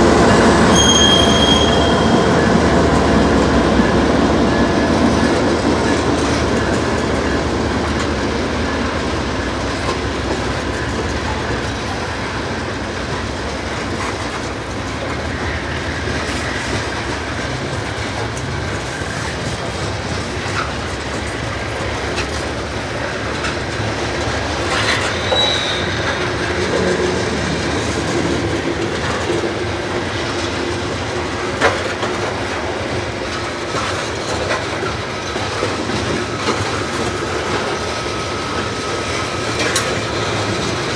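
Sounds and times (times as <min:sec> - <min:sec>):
high wheel squeal: 0:00.0 - 0:05.3, 0:24.6 - 0:27.4
train wheels clickety-clack: 0:00.0 - 0:40.9.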